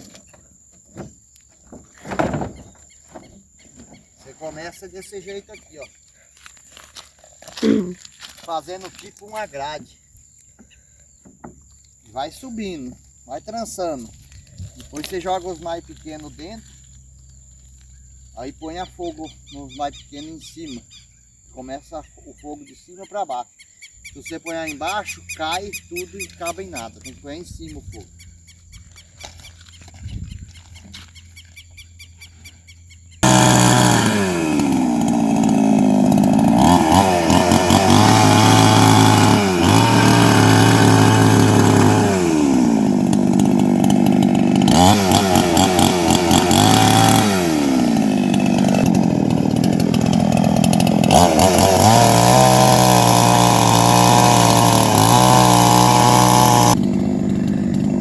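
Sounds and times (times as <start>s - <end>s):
chainsaw revving: 33.2s - 58.0s.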